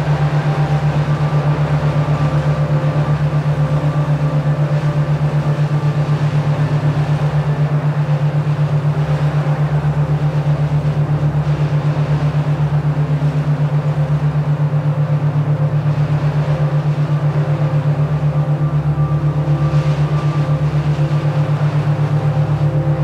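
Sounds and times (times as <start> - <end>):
pulsing low electronic tone: 0.0 - 23.0.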